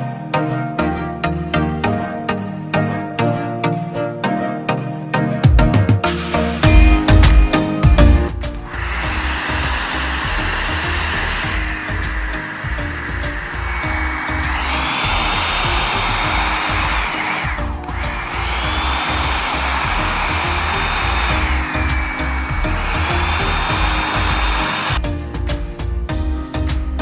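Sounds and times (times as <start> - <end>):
background music with steady beat: 0.0 - 27.0
hair dryer brush motor whine: 7.0 - 25.0.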